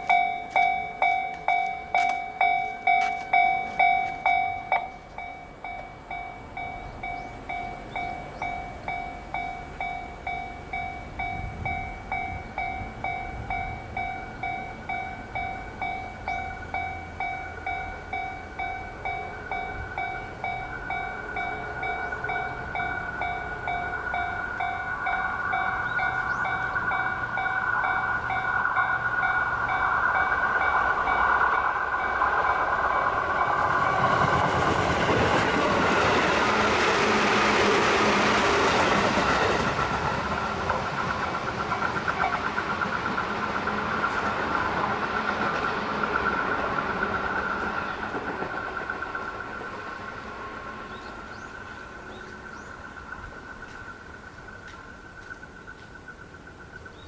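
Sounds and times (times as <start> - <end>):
level crossing bell ringing: 0.0 - 31.3
train wheels clattering: 0.0 - 56.0.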